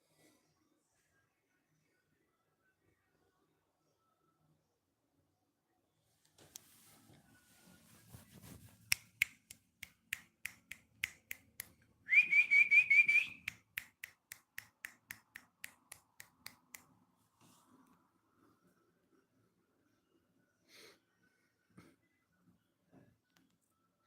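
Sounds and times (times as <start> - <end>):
person making clicking sounds: 8.9 - 11.8, 13.2 - 16.9
warbling whistle: 12.1 - 13.5.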